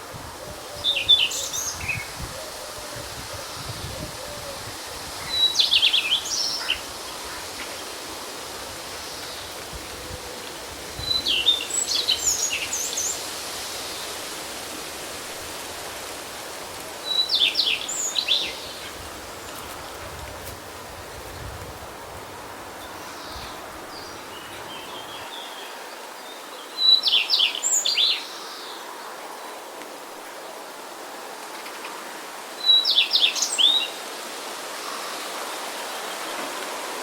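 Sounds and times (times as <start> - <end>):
wind hiss: 0.0 - 37.0
songbird chirping: 22.7 - 29.6.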